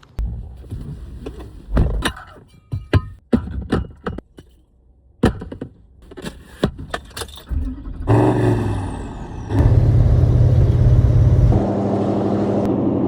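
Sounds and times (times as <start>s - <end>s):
engine cranking and starting: 7.4s - 11.4s
engine idling: 7.5s - 11.6s.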